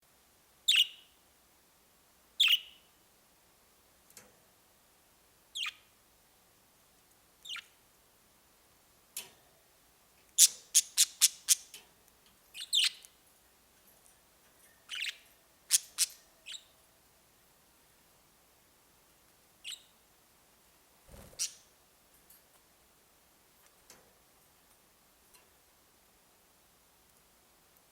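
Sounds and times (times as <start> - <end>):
budgerigars chirping: 0.7 - 1.0, 2.4 - 2.8, 5.6 - 5.8, 10.4 - 11.7, 12.6 - 13.0, 14.9 - 16.7, 19.6 - 19.9.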